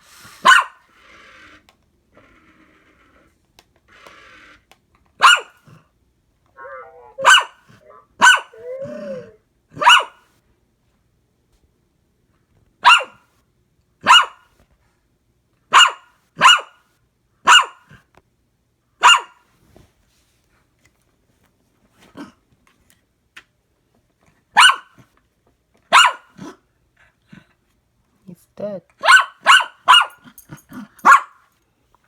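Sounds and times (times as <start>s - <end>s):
dog barking: 0.4s - 0.8s, 5.2s - 5.8s, 6.6s - 10.2s, 12.8s - 13.2s, 14.0s - 14.5s, 15.7s - 16.8s, 17.4s - 18.0s, 19.0s - 19.4s, 24.6s - 25.0s, 25.9s - 26.6s, 29.0s - 31.4s.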